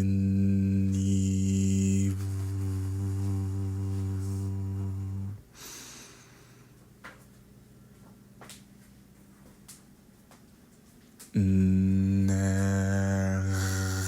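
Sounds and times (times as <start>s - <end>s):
man humming a low mantra: 0.0s - 5.5s, 11.3s - 14.0s
breath in: 5.5s - 6.7s.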